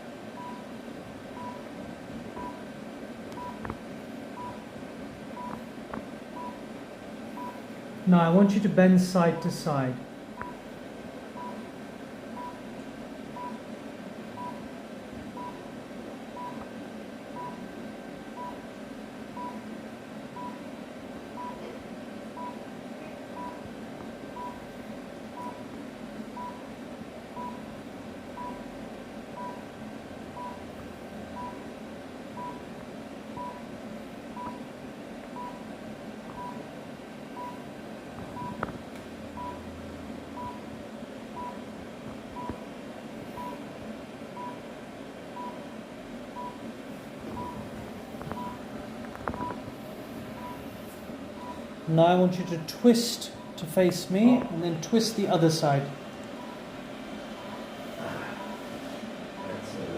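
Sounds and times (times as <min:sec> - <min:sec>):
steady hum: 0:00.0 - 0:59.9
short steady beeps: 0:25.4 - 0:25.6, 0:27.4 - 0:27.6, 0:28.4 - 0:28.6, 0:30.4 - 0:30.7, 0:33.4 - 0:33.6, 0:39.4 - 0:39.7, 0:40.4 - 0:40.7, 0:43.4 - 0:43.6, 0:47.4 - 0:47.6, 0:50.4 - 0:50.6, 0:51.4 - 0:51.7.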